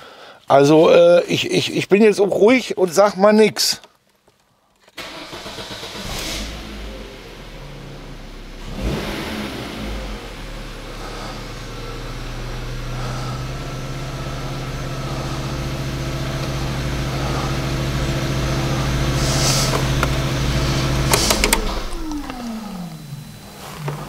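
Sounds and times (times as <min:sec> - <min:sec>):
car engine idling: 0:05.0 - 0:24.0
sharp clicks: 0:21.0 - 0:22.6.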